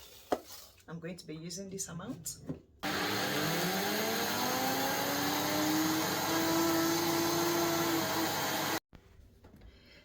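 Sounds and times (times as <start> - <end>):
blender motor grinding oats: 2.8 - 8.8.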